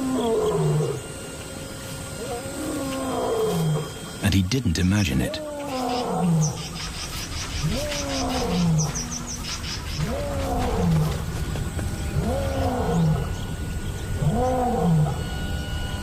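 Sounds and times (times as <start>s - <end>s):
lion roaring: 0.0s - 1.0s, 2.2s - 4.1s, 5.3s - 6.8s, 7.6s - 15.4s.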